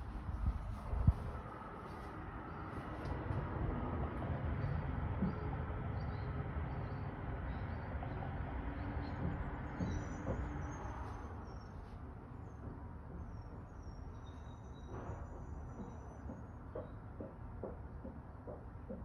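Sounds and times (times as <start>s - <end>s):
low steady rumble: 0.0s - 8.3s.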